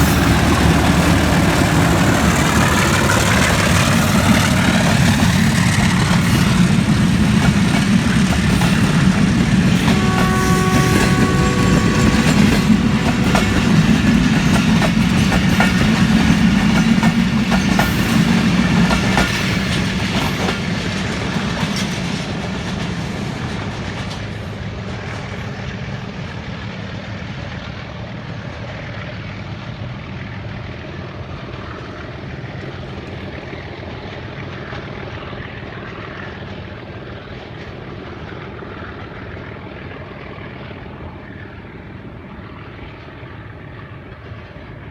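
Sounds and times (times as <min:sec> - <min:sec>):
train wheels clacking: 0:00.0 - 0:25.5
train rumble: 0:00.0 - 0:44.9
train horn: 0:09.6 - 0:15.7.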